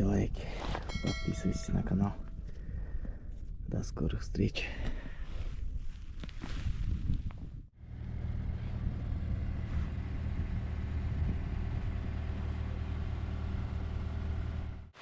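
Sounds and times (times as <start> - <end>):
vehicle engine humming: 7.8 - 15.0.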